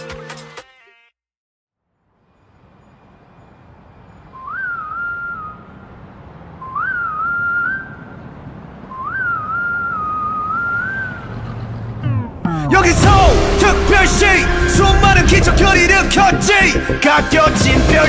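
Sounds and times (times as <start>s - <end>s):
whistled melody: 4.2s - 5.8s, 6.6s - 8.1s, 8.9s - 11.3s
rumbling noise: 12.0s - 18.0s.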